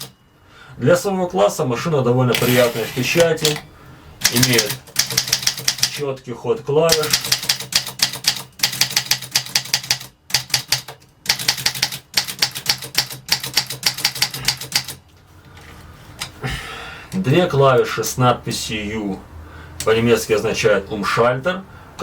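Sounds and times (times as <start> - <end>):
typewriter key strikes: 4.2 - 6.0, 6.9 - 15.0.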